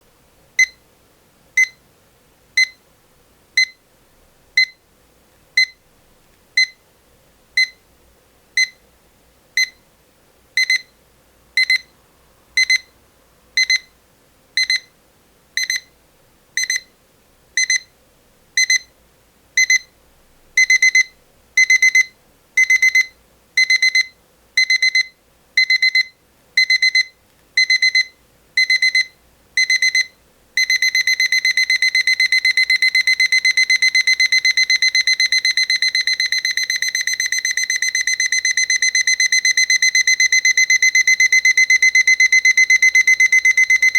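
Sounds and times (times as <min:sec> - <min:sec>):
alarm clock beeping: 0:27.6 - 0:43.9.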